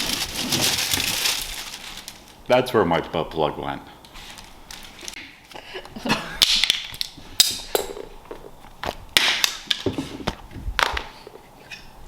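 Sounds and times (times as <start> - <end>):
rustling: 0.0 - 2.4, 4.0 - 5.2.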